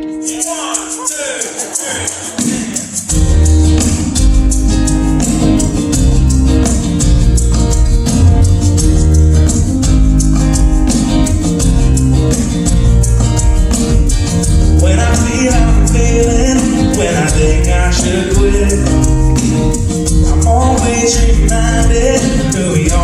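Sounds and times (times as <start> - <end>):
strummed acoustic guitar: 0.0 - 23.0
person singing: 0.1 - 3.1, 14.8 - 19.6, 20.2 - 23.0
bass line: 3.1 - 23.0.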